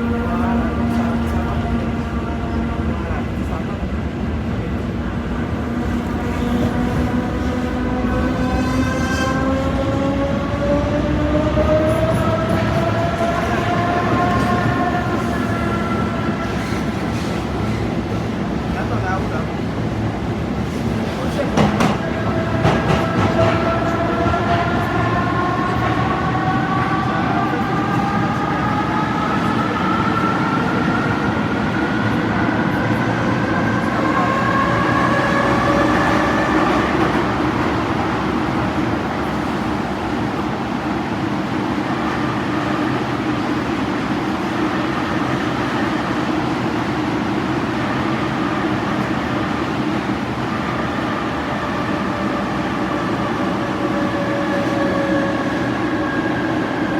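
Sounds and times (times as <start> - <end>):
train rumbling on rails: 0.0 - 56.9.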